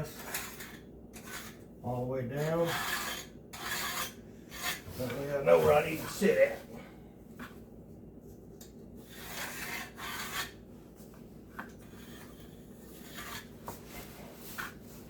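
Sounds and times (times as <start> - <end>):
pencil scraping on wood: 0.1 - 1.6, 2.4 - 6.3, 9.0 - 10.6, 11.6 - 15.0.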